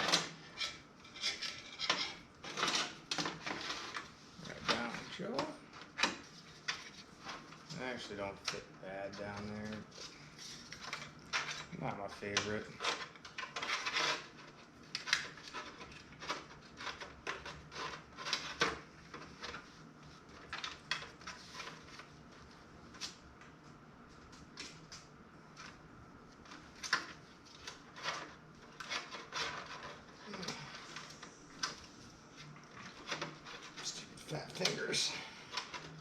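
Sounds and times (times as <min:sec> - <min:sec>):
hands handling pc cables and parts: 0:24.1 - 0:36.0.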